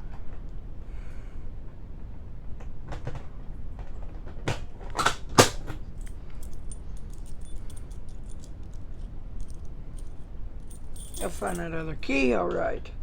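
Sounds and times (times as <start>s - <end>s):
keys clinking: 5.4s - 12.0s.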